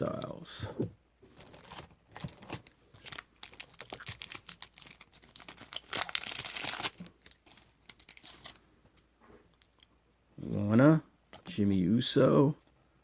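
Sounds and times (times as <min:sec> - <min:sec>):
foil wrapper tearing and crinkling: 0:01.4 - 0:08.6.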